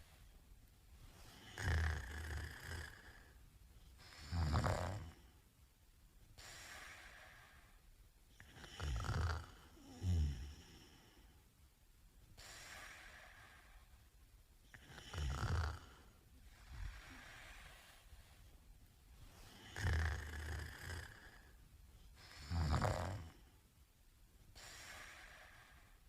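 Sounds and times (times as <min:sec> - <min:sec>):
man snoring: 0:01.3 - 0:03.3, 0:04.1 - 0:05.2, 0:08.4 - 0:11.1, 0:14.7 - 0:16.1, 0:19.5 - 0:21.5, 0:22.3 - 0:23.4
breathy breaths: 0:06.4 - 0:07.9, 0:12.4 - 0:14.2, 0:14.9 - 0:18.6, 0:24.5 - 0:26.0.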